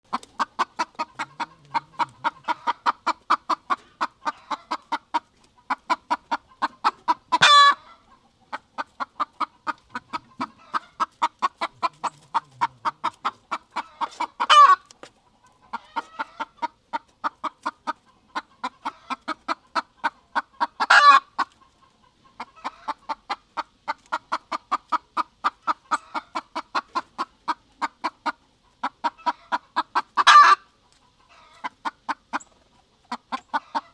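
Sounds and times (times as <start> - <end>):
rooster clucking: 0.1 - 33.9
rooster squawk: 7.3 - 8.0.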